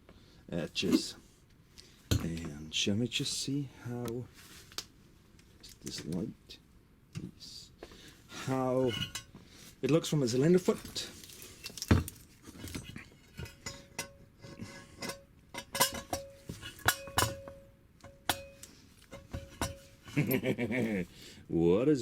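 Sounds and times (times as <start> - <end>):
metal engine parts clinking: 11.4 - 20.4.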